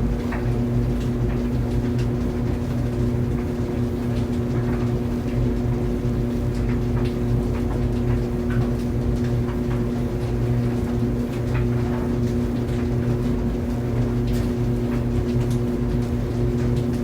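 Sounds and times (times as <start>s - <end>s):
dryer rumbling: 0.0s - 17.0s.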